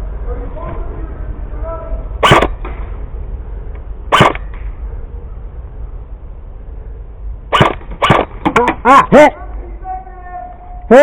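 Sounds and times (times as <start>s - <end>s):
steady low rumble: 0.0s - 11.0s
airsoft gun shots: 2.2s - 2.8s, 4.1s - 4.7s, 7.5s - 8.8s.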